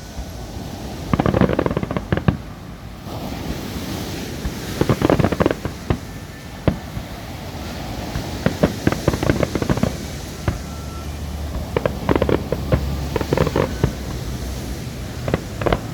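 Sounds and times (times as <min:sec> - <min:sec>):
firework sharp bang: 0:00.0 - 0:15.9
fireworks crackling pops: 0:00.0 - 0:15.9.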